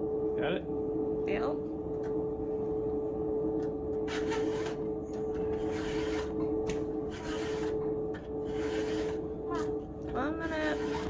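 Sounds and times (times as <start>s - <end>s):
steady hum: 0.0s - 11.0s.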